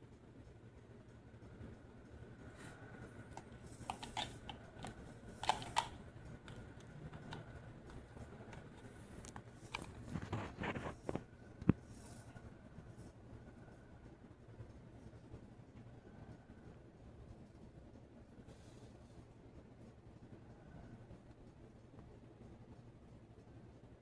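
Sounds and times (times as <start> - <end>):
ceiling fan humming: 0.0 - 24.0
clicks and crackles: 3.2 - 11.8.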